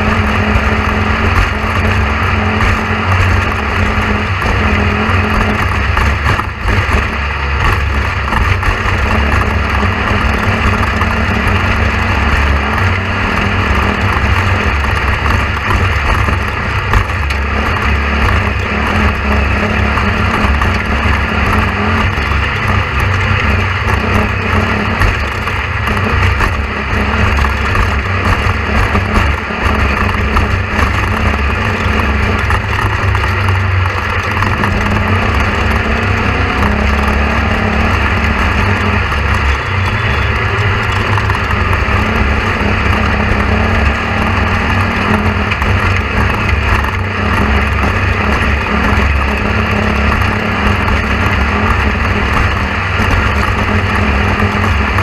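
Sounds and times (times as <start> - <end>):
mechanical rumble with low hum: 0.0 - 55.0.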